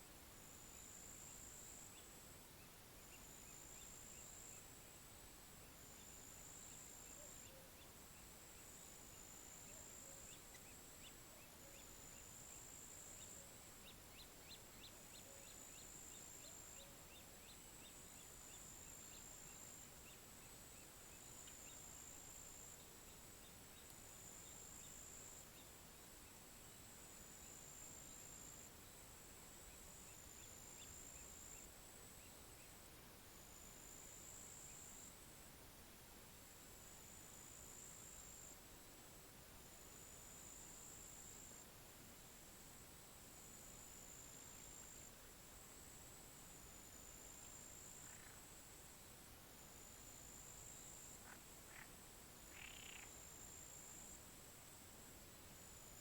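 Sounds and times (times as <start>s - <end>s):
low frog croaks: 48.0s - 48.5s, 51.2s - 53.2s
rapid faint ticking calls: 51.1s - 53.3s
crickets trilling: 52.5s - 54.2s.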